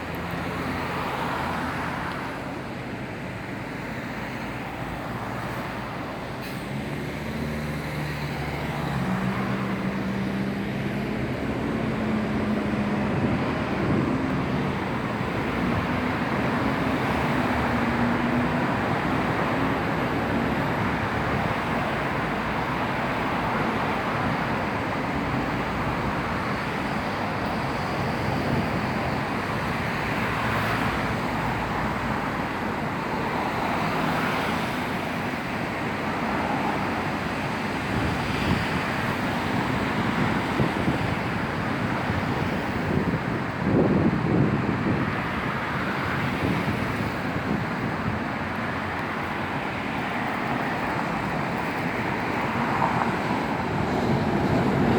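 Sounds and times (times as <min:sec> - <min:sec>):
road traffic rumble: 0:00.0 - 0:54.9
wind: 0:00.0 - 0:54.9.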